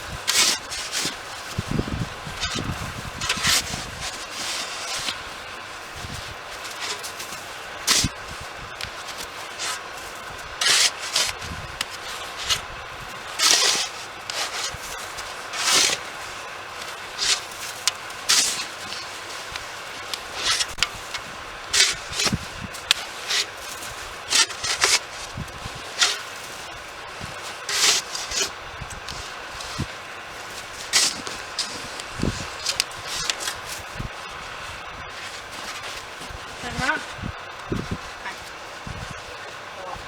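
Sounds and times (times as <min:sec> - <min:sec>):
snow shovel scraping snow: 0:00.0 - 0:40.0.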